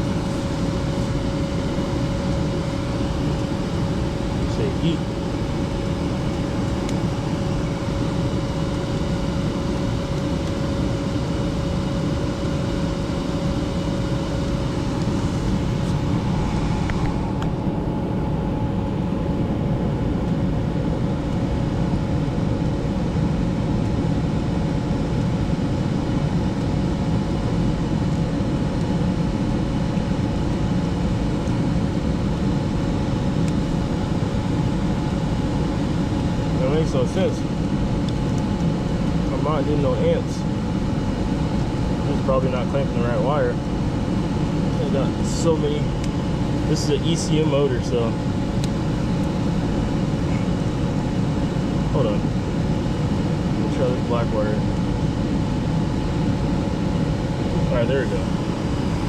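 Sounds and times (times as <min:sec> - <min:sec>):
furnace blower rushing air: 0:00.0 - 0:10.6, 0:11.4 - 0:18.9
constant mechanical hum: 0:00.0 - 0:59.0.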